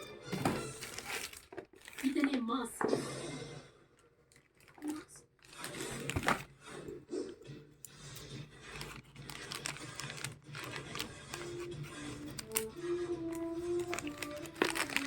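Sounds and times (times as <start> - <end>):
packaging rustling and tearing: 0.4 - 2.3, 4.4 - 6.7, 8.6 - 15.0.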